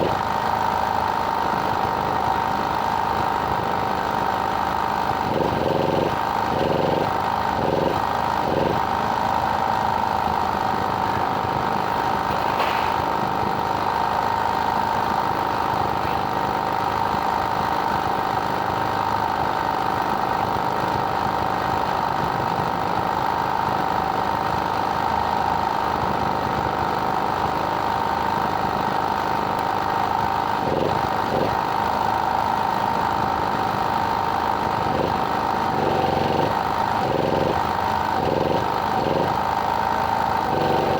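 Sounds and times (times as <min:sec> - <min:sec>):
steady machine noise: 0:00.0 - 0:20.6, 0:29.0 - 0:40.9.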